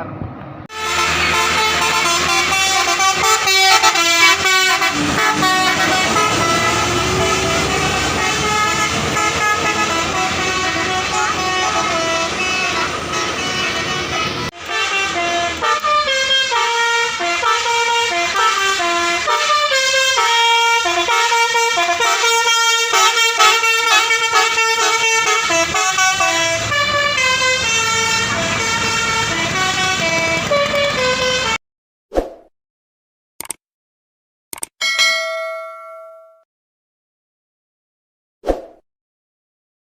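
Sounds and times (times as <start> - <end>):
engine noise: 0.0 - 31.6
musical air horns playing tunes: 0.7 - 31.6.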